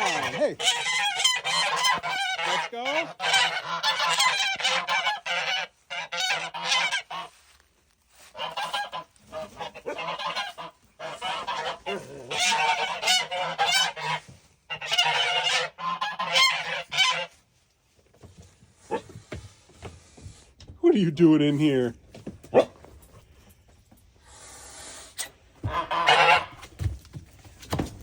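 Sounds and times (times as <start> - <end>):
geese honking: 0.0 - 17.4, 25.6 - 26.7.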